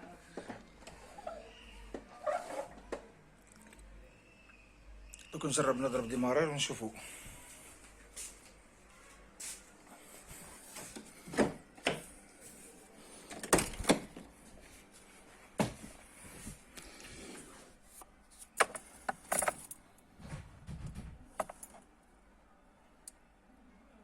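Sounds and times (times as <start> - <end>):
keys jingling: 18.6 - 19.8.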